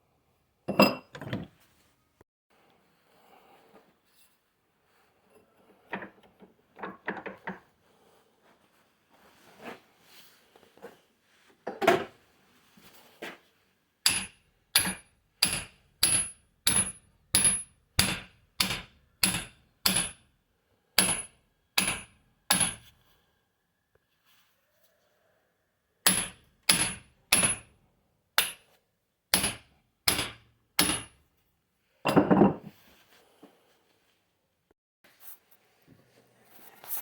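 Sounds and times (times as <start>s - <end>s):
tool knocks: 32.1s - 32.7s.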